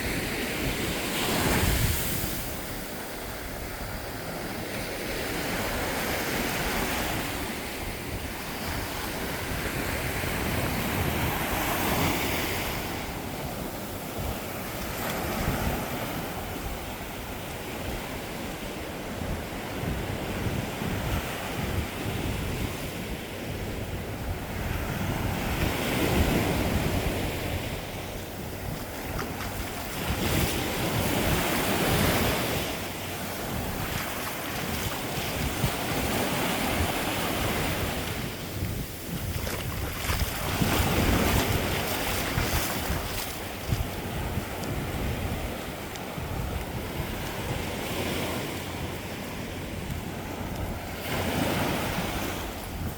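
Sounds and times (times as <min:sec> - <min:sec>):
wind on microphone: 0:00.0 - 0:52.9
ocean surf breaking: 0:24.1 - 0:52.9.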